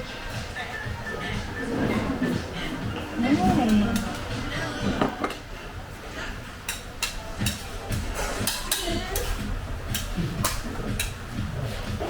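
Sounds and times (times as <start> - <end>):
background music: 0.0 - 5.9
indistinct voices: 0.2 - 6.4.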